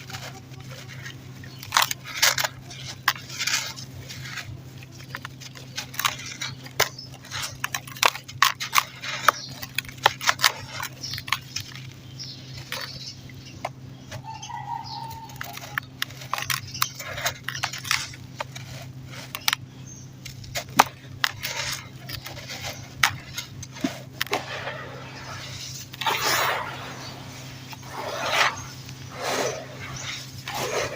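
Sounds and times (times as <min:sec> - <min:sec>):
dirt clumps crunching: 0:00.0 - 0:30.9
low hum: 0:14.9 - 0:30.9.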